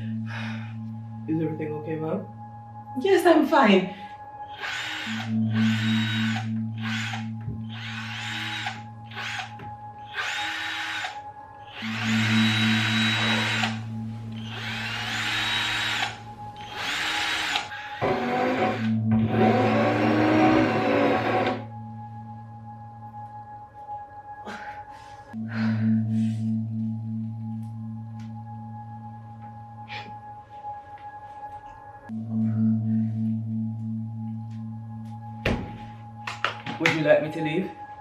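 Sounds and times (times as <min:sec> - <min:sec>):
steady low hum: 0:00.0 - 0:09.5, 0:11.8 - 0:24.4, 0:25.3 - 0:30.8, 0:31.8 - 0:36.4
power drill whining: 0:04.5 - 0:13.8, 0:14.4 - 0:21.7.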